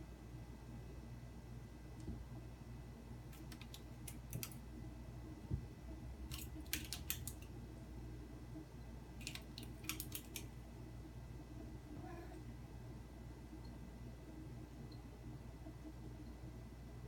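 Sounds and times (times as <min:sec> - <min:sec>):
plastic clicks and crackles: 0:03.3 - 0:04.6, 0:06.3 - 0:07.5, 0:09.2 - 0:10.5.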